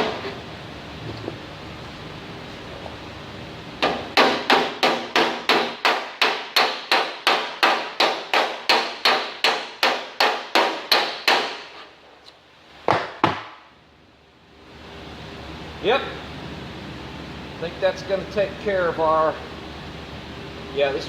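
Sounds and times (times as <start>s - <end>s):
hammer striking sheet steel: 3.8s - 11.8s.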